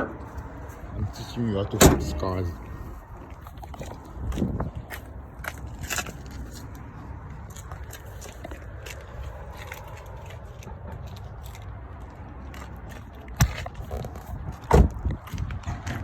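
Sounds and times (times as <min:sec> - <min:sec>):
low steady rumble: 0:00.0 - 0:12.3.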